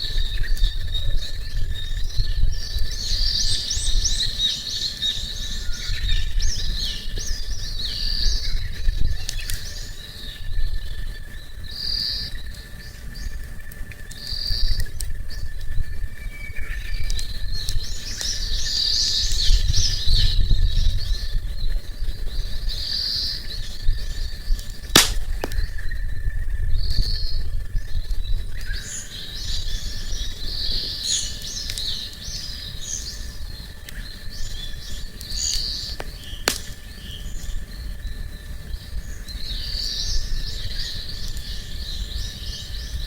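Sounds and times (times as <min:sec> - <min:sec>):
small birds singing and chirping: 0:00.0 - 0:43.0
sharp click: 0:24.9 - 0:25.6, 0:35.5 - 0:36.8.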